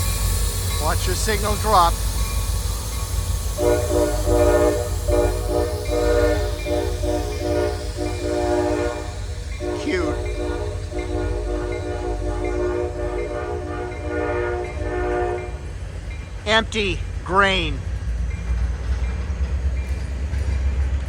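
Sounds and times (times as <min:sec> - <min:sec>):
train rumbling past: 0:00.0 - 0:21.0
locomotive air horn blasts: 0:03.5 - 0:15.6.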